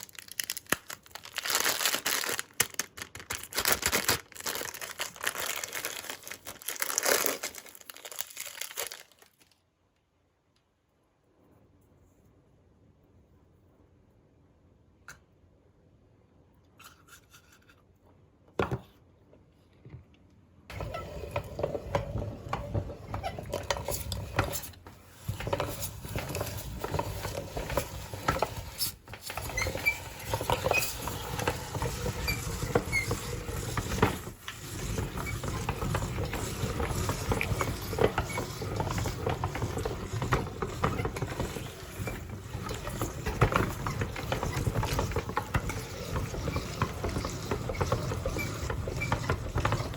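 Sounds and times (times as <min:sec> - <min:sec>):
meat grinder grinding: 0:20.7 - 0:49.9.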